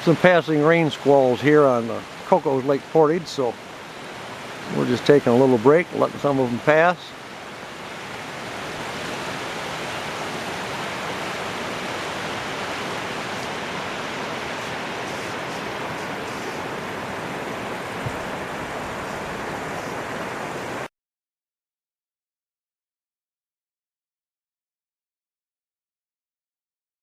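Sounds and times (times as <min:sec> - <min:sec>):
rain falling: 0:00.0 - 0:20.9.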